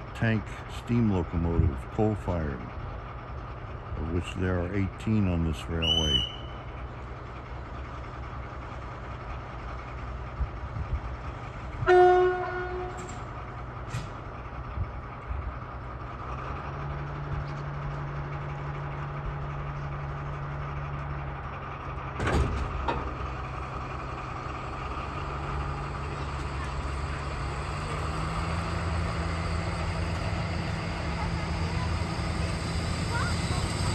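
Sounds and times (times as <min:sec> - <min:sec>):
locomotive humming: 0:00.0 - 0:33.9
train horn blast: 0:11.8 - 0:13.2.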